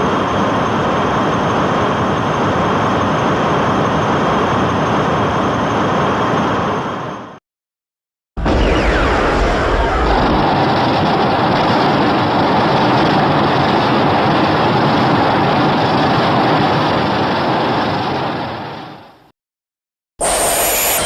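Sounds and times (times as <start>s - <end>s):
brief falling whistle: 8.4s - 10.6s, 20.2s - 21.0s
dense rushing blast: 8.4s - 12.2s.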